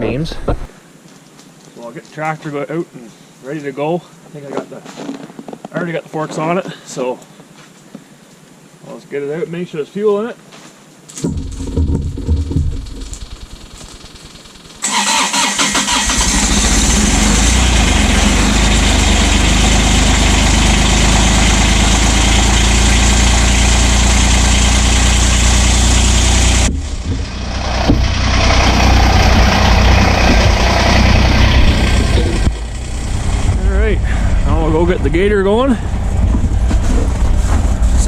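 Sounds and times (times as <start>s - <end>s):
tractor engine running: 11.2s - 38.0s.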